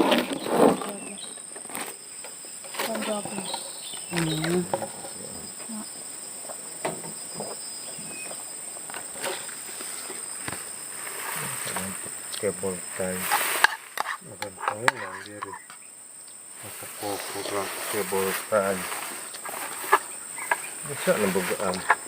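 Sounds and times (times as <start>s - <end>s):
insects droning: 0.0s - 22.0s
voice murmur: 4.1s - 5.8s, 11.3s - 13.3s, 14.2s - 15.6s, 16.6s - 18.8s.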